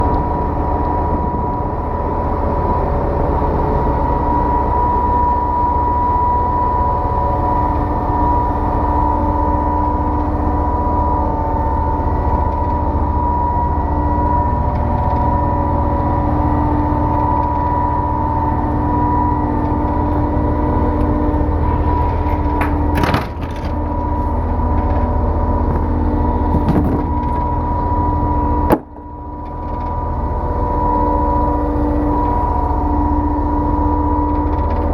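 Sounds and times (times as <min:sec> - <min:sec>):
concrete pump engine drone: 0:00.0 - 0:34.9.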